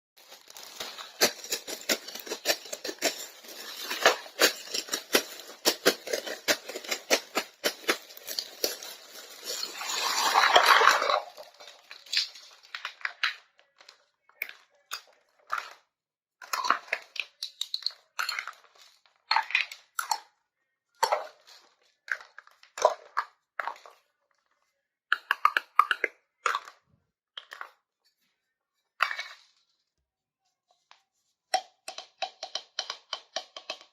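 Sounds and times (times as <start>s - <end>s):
plastic packaging crinkling and tearing: 0.2s - 13.5s.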